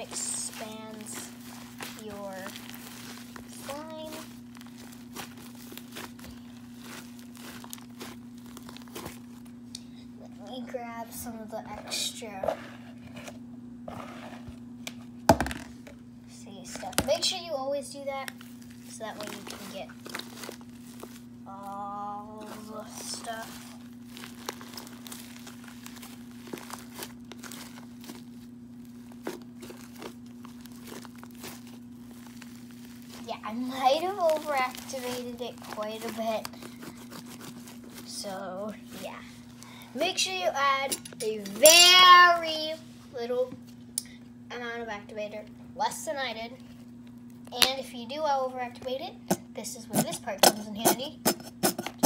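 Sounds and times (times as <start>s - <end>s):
slime squished by hand: 0.0s - 9.7s, 22.5s - 38.1s.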